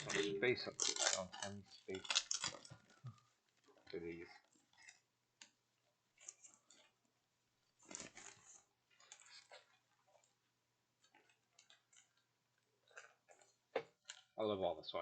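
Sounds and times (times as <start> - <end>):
paper posters rustling: 7.6 - 10.4.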